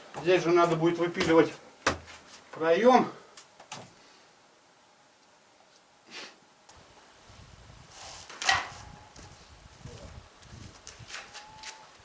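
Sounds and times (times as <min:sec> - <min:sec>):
high insect trill: 0:06.7 - 0:12.0.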